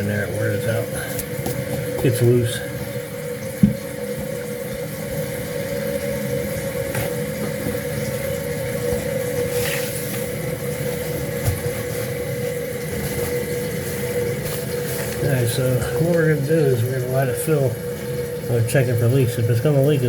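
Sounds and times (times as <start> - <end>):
toilet tank refilling: 0.0 - 20.0
faint knocks: 3.6 - 3.9.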